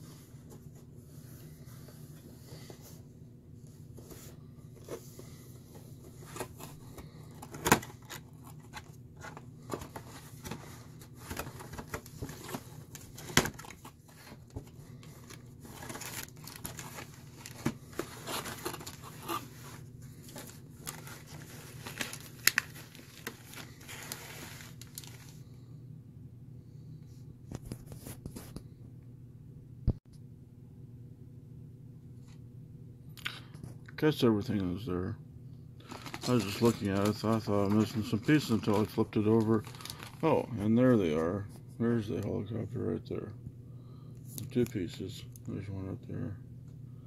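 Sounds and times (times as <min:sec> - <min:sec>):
steady low hum: 0:00.0 - 0:47.0
packaging rustling: 0:06.1 - 0:25.4, 0:35.8 - 0:40.5.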